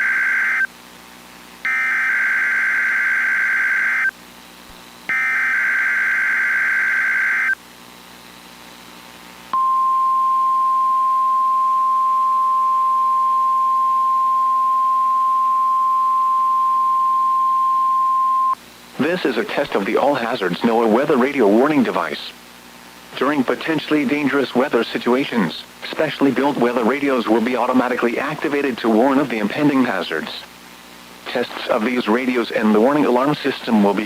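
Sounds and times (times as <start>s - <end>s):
long steady alarm tone: 0.0s - 0.8s, 1.6s - 4.2s, 5.1s - 7.6s, 9.5s - 18.6s.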